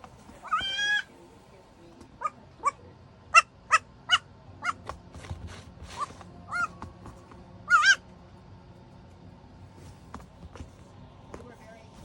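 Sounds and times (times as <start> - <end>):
goat kid bleating: 0.4 - 1.1.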